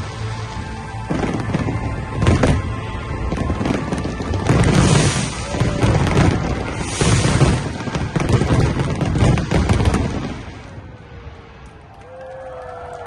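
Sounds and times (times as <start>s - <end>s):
music playing: 0.0s - 10.8s
firework crackling hiss: 0.0s - 12.2s
firework booms: 1.1s - 11.0s.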